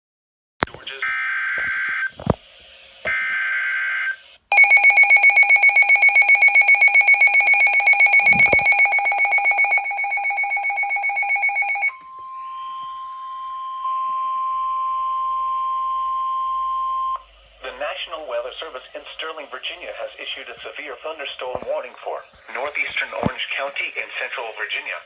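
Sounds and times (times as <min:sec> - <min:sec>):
fast pulsing electronic alert beep: 0:04.5 - 0:11.9
steady single-pitched warning tone: 0:04.5 - 0:17.8.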